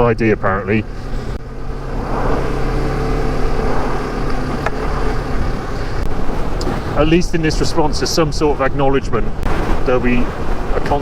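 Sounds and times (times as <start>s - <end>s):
motorcycle engine running: 0.0s - 7.6s
wind rushing over microphone: 0.0s - 11.0s.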